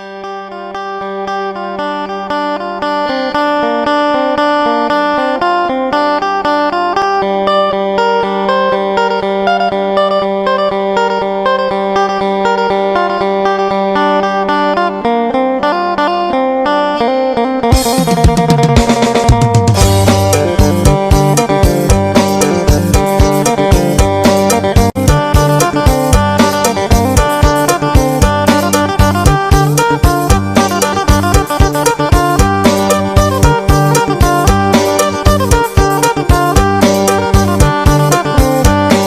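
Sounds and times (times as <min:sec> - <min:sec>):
plucked lute melody over drone: 0:00.0 - 0:39.0
drums: 0:17.7 - 0:39.0.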